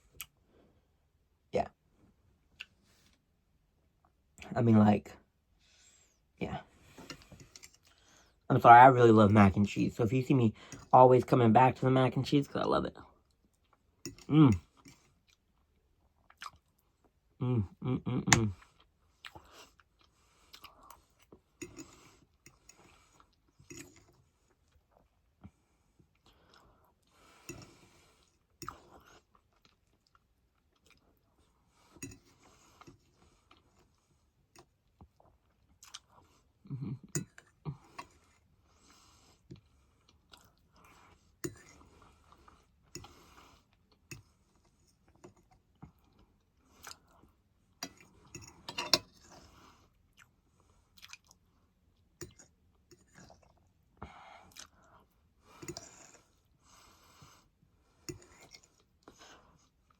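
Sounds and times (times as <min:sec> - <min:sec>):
person chewing food: 0:13.2 - 0:17.2, 0:17.8 - 0:59.9.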